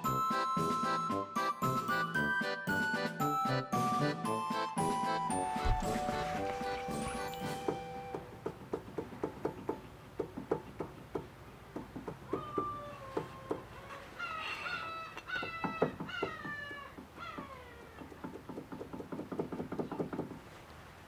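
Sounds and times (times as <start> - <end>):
regular clicking: 5.5 - 13.8, 15.1 - 20.4
cat meowing: 12.3 - 15.7.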